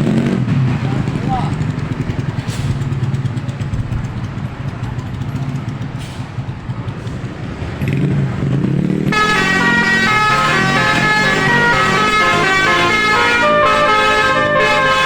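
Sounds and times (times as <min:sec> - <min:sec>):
bus engine running: 0:00.0 - 0:15.0
multi-tone bus horn melody: 0:09.1 - 0:15.0.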